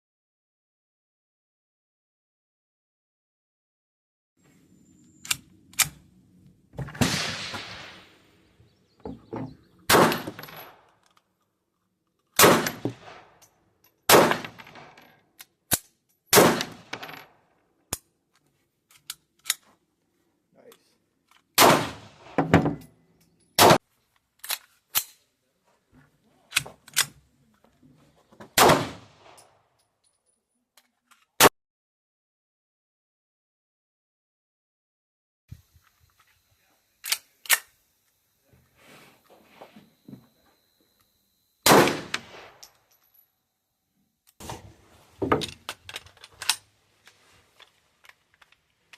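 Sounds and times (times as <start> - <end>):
sharp cracks: 6.9 - 8.2
loud gunshots with echo: 7.0 - 8.2, 21.6 - 22.4, 41.7 - 42.6.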